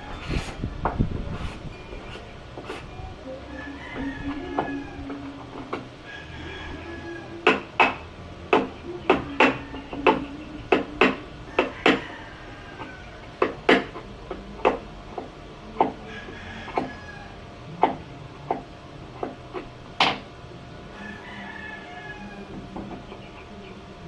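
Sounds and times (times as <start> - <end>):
hammer striking wood: 7.4 - 12.0, 13.4 - 16.0, 16.7 - 16.9, 17.8 - 20.2.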